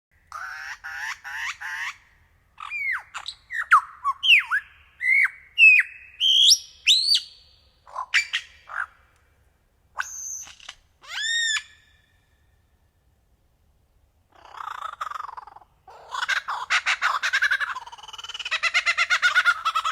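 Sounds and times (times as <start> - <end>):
bird calling: 14.3 - 19.9.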